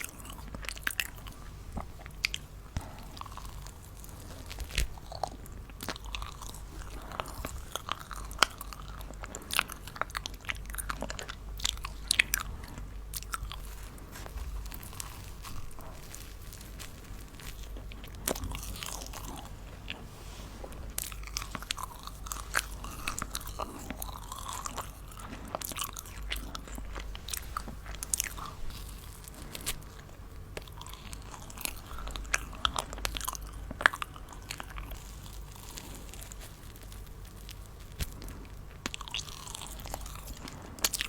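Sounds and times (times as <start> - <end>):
crunching and chewing food: 0.0 - 41.0.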